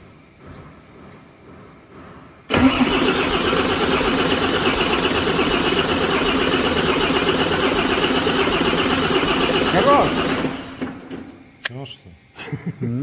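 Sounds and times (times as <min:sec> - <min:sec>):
starter cranking diesel engine: 0:02.5 - 0:11.6.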